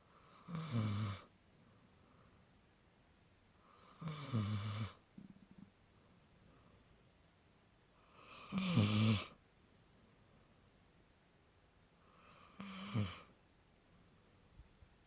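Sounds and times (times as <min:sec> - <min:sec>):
dog snoring: 0:00.3 - 0:01.3, 0:03.8 - 0:05.0, 0:08.2 - 0:09.4, 0:12.2 - 0:13.4.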